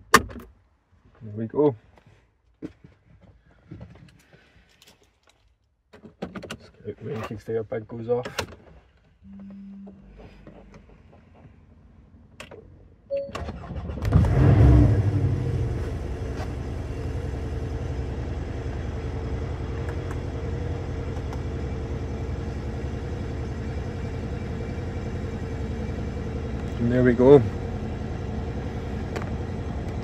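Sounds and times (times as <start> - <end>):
car engine starting and idling: 9.3 - 30.0
ignition clicks: 21.1 - 21.5.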